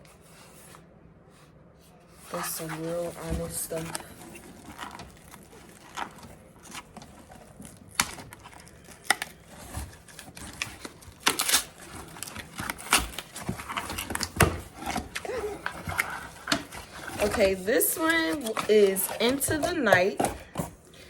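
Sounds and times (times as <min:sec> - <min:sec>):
packaging crinkling and tearing: 0:02.7 - 0:20.8.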